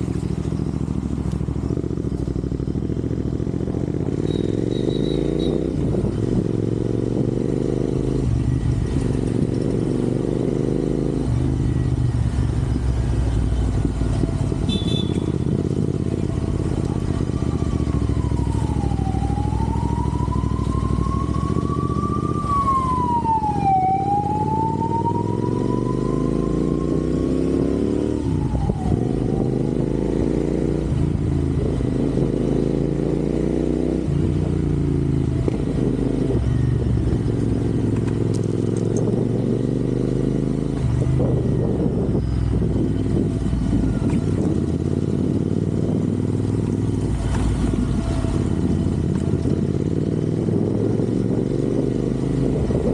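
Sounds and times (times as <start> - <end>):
motorcycle engine revving through gears: 0.0 - 52.9
siren wailing: 16.2 - 30.5.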